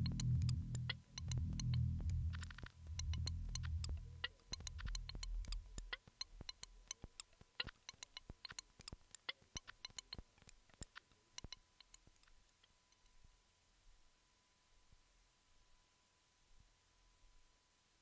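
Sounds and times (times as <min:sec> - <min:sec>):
low synthesizer bass: 0:00.0 - 0:05.5
sparse electronic clicks: 0:00.0 - 0:12.4
faint steady tone: 0:00.0 - 0:18.0.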